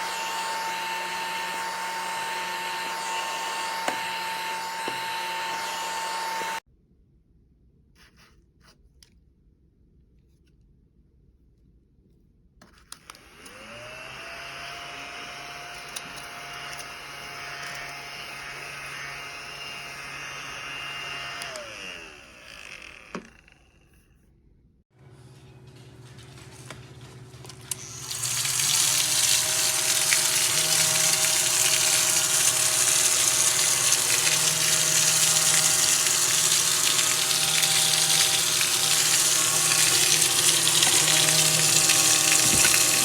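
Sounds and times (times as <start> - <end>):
handheld vacuum cleaner whine: 0.0 - 6.6, 13.0 - 24.0, 25.0 - 43.0
motor running: 0.0 - 6.6, 25.0 - 43.0.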